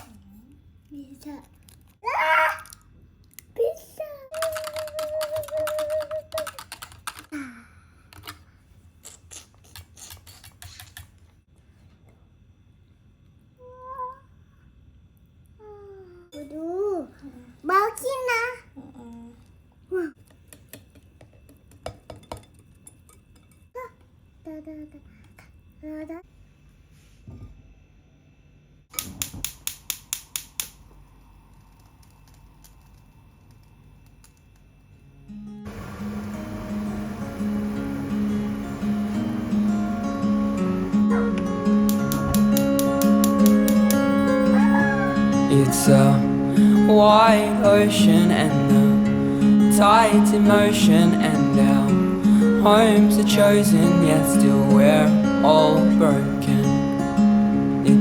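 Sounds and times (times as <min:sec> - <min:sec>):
sharp clicks: 0:41.8 - 0:44.1
voice holding one note: 0:43.6 - 0:52.0.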